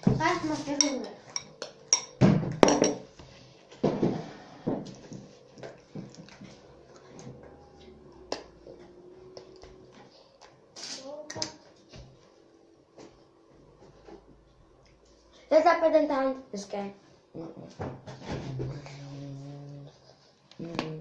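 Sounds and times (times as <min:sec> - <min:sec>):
utensils clinking against dishes: 0:00.6 - 0:03.1.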